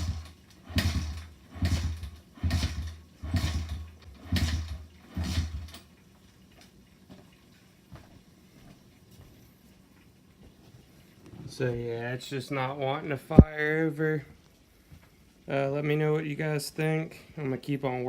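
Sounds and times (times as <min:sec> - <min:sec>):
motorcycle engine being kick-started: 0:00.0 - 0:05.9.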